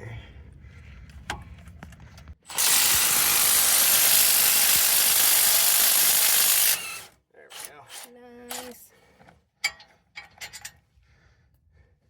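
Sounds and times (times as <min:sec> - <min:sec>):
handheld power tool running: 0:02.5 - 0:08.6.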